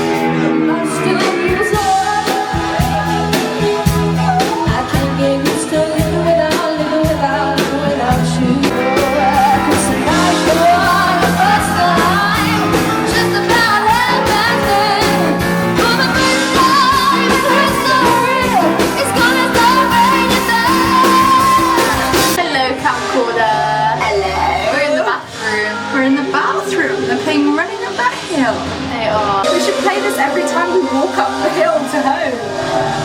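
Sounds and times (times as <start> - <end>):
pop-rock song with singer: 0.0 - 24.1.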